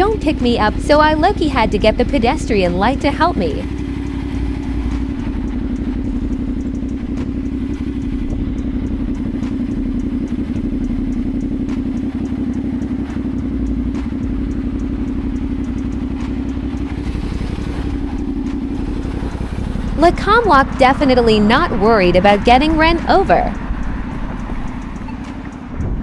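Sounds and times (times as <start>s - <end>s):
motorcycle engine idling: 0.0s - 26.0s.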